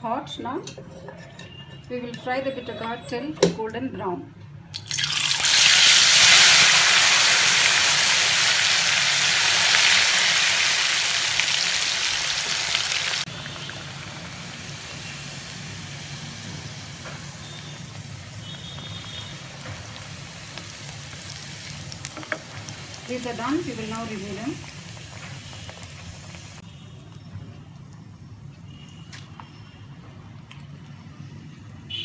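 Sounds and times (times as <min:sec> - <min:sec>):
food deep-frying in hot oil: 0:04.7 - 0:27.3.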